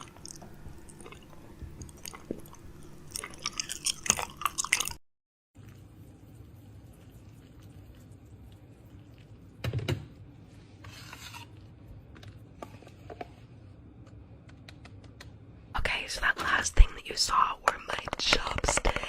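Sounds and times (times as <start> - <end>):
low steady hum: 0.0 - 5.0, 5.6 - 19.0
kitchen items rubbing and scraping: 10.5 - 11.7.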